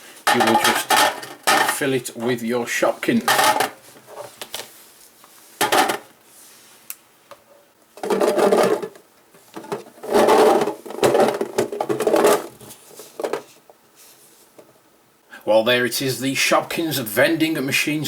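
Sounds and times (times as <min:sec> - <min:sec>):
plastic figures clattering into tin: 0:00.3 - 0:01.8, 0:03.3 - 0:03.8.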